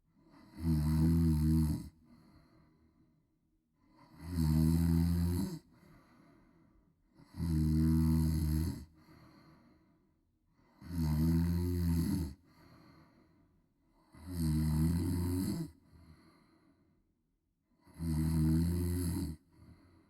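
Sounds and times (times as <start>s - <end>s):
quiet breathing: 0.1s - 7.5s, 8.1s - 11.0s, 12.2s - 14.2s, 15.5s - 18.0s, 19.2s - 20.0s
woman snoring loudly: 0.3s - 2.0s, 3.9s - 5.7s, 7.2s - 9.0s, 10.8s - 12.4s, 14.1s - 15.8s, 17.8s - 19.4s.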